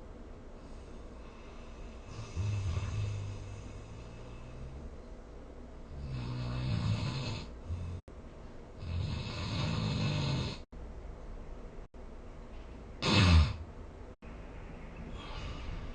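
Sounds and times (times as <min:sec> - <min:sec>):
person snoring: 0:00.6 - 0:05.0, 0:05.9 - 0:08.1, 0:08.8 - 0:10.7, 0:13.0 - 0:13.6.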